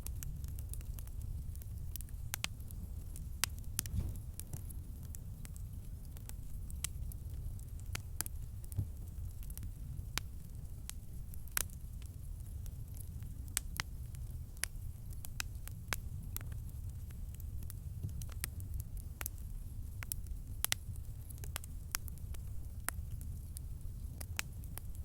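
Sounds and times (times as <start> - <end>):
campfire crackling: 0.0 - 25.0
low rumble: 3.7 - 4.7.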